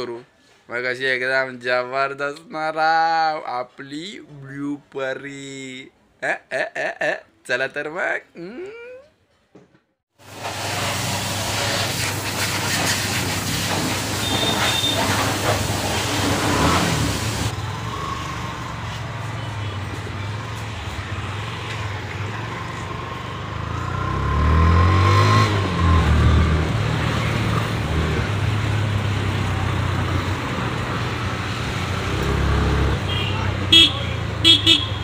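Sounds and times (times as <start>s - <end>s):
motorcycle engine revving: 10.6s - 35.0s.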